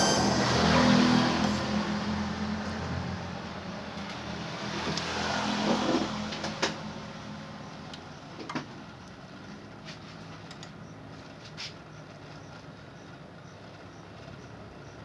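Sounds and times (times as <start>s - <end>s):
rush of noise: 0.0s - 3.1s.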